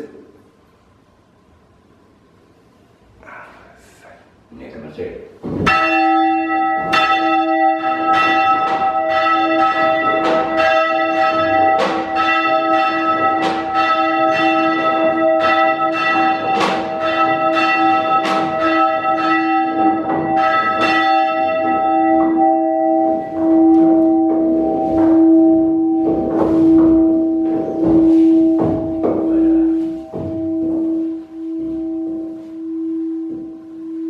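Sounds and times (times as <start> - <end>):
church bell ringing: 5.6 - 34.0.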